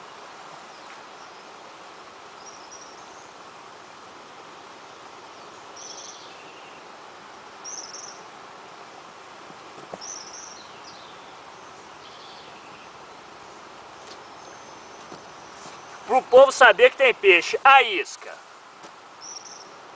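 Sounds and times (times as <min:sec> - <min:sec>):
steady hiss: 0:00.0 - 0:19.9
bird chirping: 0:05.4 - 0:06.8, 0:07.6 - 0:08.3, 0:10.0 - 0:18.1, 0:19.2 - 0:19.8.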